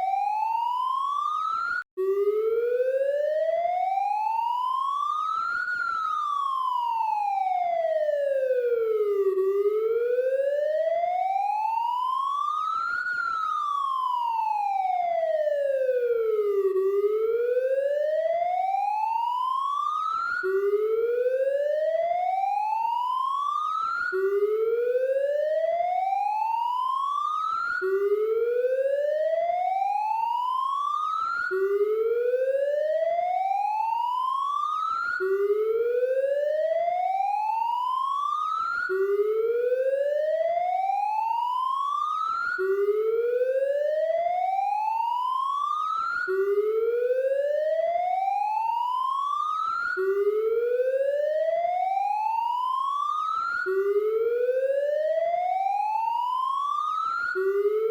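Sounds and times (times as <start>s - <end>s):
police siren wailing: 0.0s - 57.9s.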